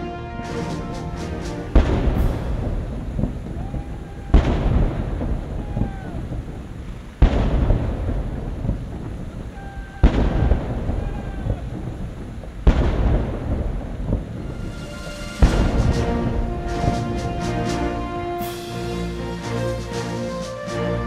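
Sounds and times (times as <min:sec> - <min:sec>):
deep booms with low rumble: 0:01.8 - 0:18.3.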